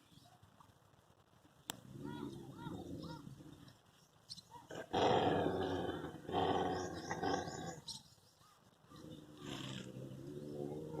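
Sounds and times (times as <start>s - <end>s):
dogs growling: 4.7s - 7.8s, 9.0s - 11.0s.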